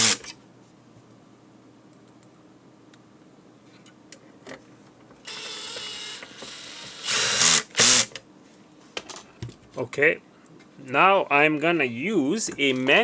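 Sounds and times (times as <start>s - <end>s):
electric screwdriver motor running: 0.0s - 0.2s, 5.3s - 8.1s
screwdriver clutch ratcheting: 0.0s - 0.3s, 5.3s - 8.2s.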